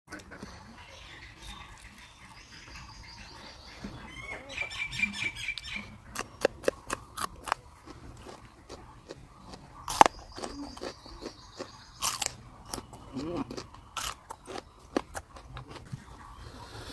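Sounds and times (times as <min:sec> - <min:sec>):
bird chirping trill: 0:00.5 - 0:06.7, 0:09.4 - 0:13.2.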